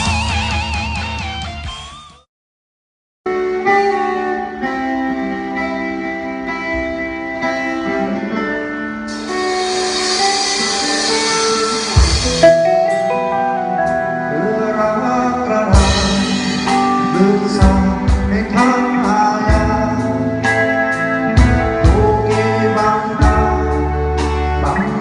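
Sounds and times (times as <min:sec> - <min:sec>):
bass: 0:00.0 - 0:02.3, 0:03.3 - 0:25.0
guitar: 0:00.0 - 0:02.3, 0:03.3 - 0:25.0
steady drum beat: 0:09.1 - 0:12.6, 0:21.3 - 0:22.5
person singing: 0:09.6 - 0:25.0.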